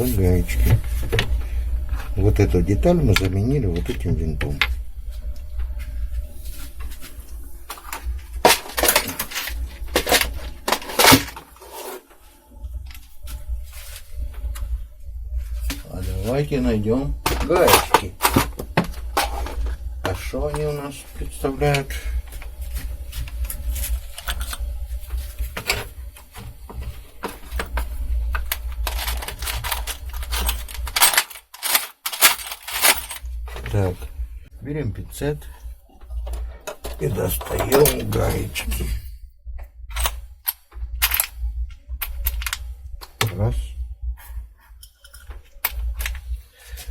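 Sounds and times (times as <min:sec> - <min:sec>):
steady low hum: 0:00.0 - 0:46.9
small metal parts clinking: 0:27.4 - 0:33.8
metal nuts clattering: 0:28.5 - 0:33.2.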